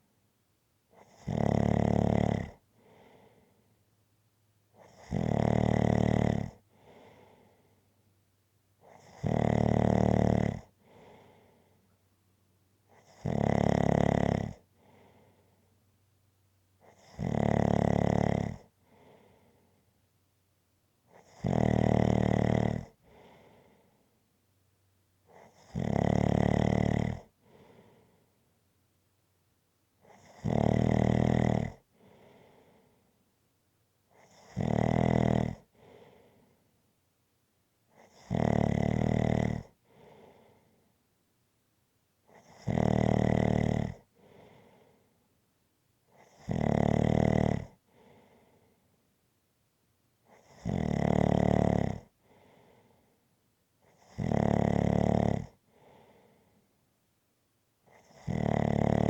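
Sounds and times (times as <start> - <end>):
person snoring: 1.0 - 3.2, 4.8 - 7.4, 8.9 - 11.4, 13.0 - 14.6, 16.9 - 18.7, 21.2 - 23.4, 25.4 - 27.6, 30.1 - 32.2, 34.2 - 36.2, 38.0 - 40.5, 42.3 - 44.8, 46.2 - 48.2, 50.3 - 52.1, 53.9 - 56.2, 58.0 - 59.0
faint breath: 2.7 - 3.9, 6.6 - 8.2, 10.7 - 12.1, 14.6 - 16.0, 18.8 - 20.1, 23.0 - 24.3, 27.3 - 28.6, 31.8 - 33.3, 35.6 - 36.9, 39.7 - 41.1, 44.0 - 45.4, 47.8 - 49.1, 52.1 - 54.0, 55.6 - 56.9.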